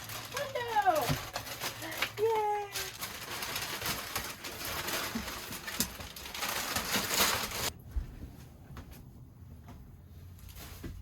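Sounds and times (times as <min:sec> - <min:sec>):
paper peeling and crumpling: 0:00.0 - 0:07.8.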